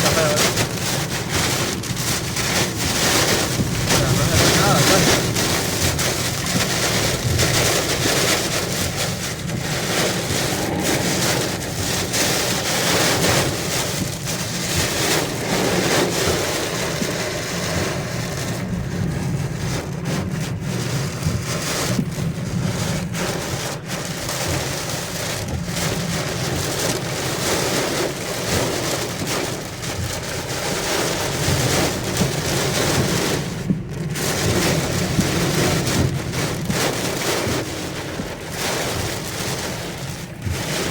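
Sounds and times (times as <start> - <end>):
strong wind: 0.0 - 28.8
heavy rain: 0.0 - 40.9.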